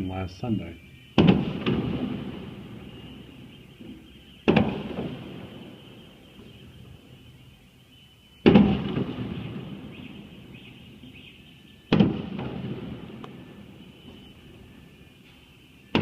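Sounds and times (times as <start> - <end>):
fireworks bursting with bang: 1.2 - 5.8, 8.4 - 10.3, 11.9 - 14.3.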